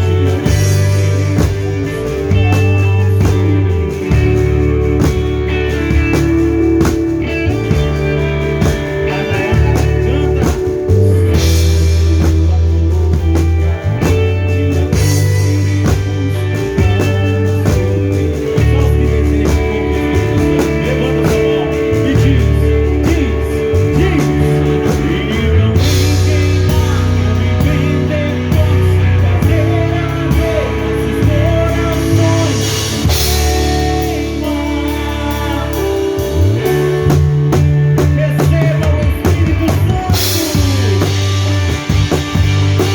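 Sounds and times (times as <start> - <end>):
bass guitar: 0.0 - 42.9
drum kit beat: 0.0 - 42.9
guitar: 0.0 - 42.9.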